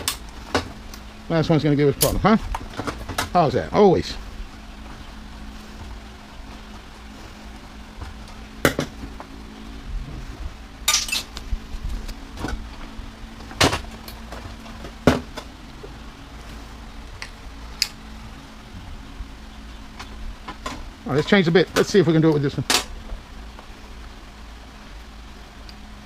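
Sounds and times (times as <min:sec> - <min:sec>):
steady low hum: 0:00.0 - 0:26.0
metal parts clinking and knocking: 0:10.9 - 0:11.4.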